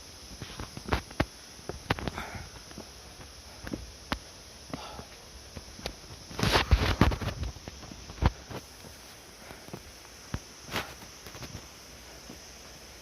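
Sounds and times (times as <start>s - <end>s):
footsteps climbing steps: 0.3s - 12.9s.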